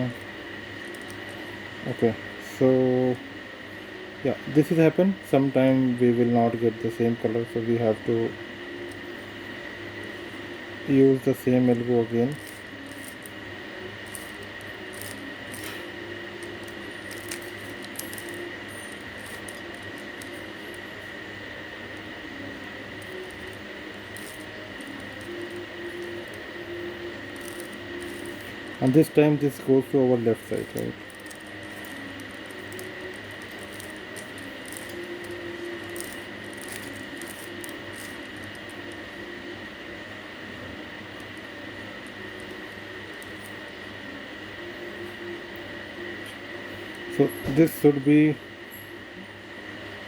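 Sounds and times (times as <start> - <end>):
thin high whine: 0.0 - 50.0
puzzle cube clicking and rubbing: 12.3 - 13.3, 14.0 - 15.8, 16.4 - 20.8, 23.0 - 26.4, 27.1 - 29.2, 30.5 - 39.0.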